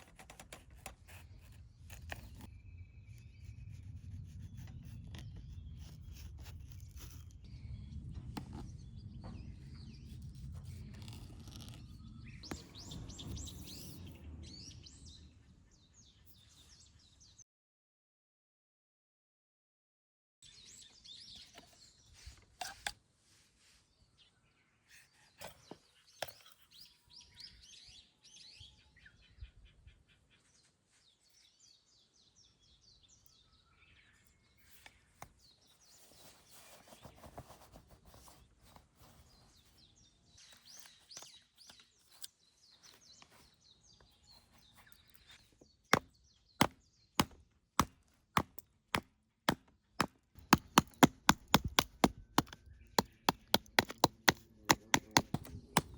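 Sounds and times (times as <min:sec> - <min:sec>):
birds chirping: 0:07.4 - 0:17.4, 0:49.9 - 0:55.9
firewood being chopped: 0:45.9 - 0:55.9.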